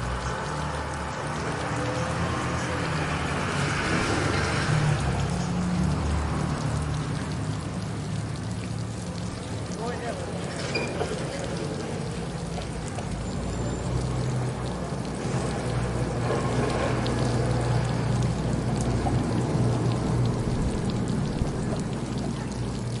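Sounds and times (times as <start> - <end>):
water fountain splashing: 0.0 - 23.0.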